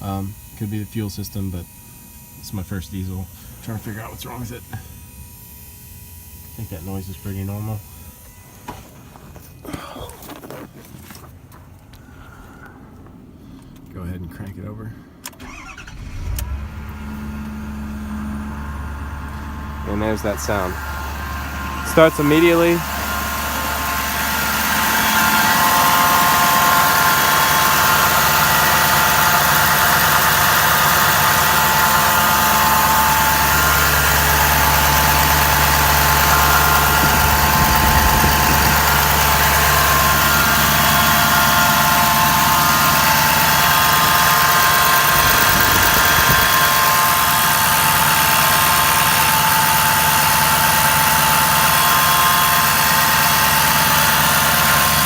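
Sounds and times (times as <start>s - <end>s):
alternator whine: 0.0s - 55.0s
diesel engine idling: 15.4s - 55.0s.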